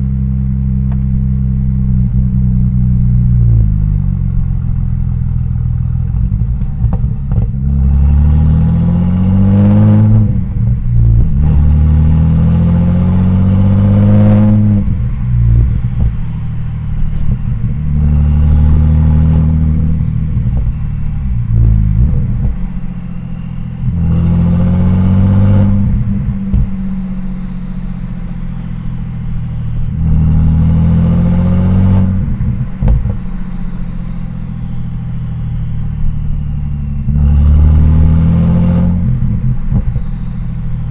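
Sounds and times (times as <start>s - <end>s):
car engine accelerating: 0.0s - 40.9s
turbo whistle: 9.0s - 40.9s.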